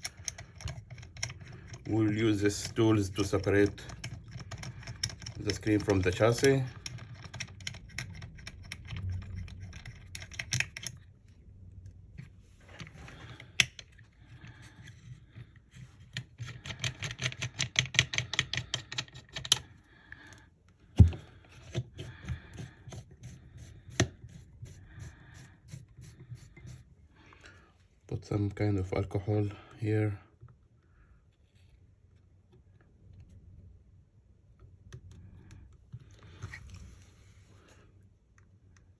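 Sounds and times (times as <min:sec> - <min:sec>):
tools clicking and scraping phone: 0:00.0 - 0:20.4, 0:21.0 - 0:27.0.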